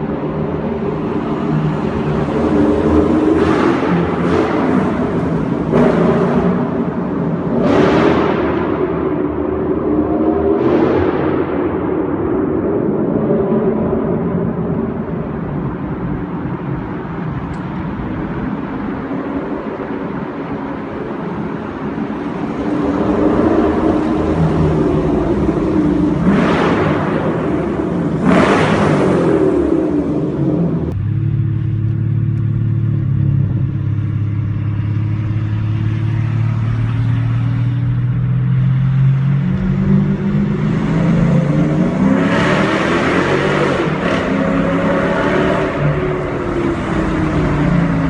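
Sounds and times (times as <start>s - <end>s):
car engine revving: 0.0s - 11.8s, 22.1s - 48.0s.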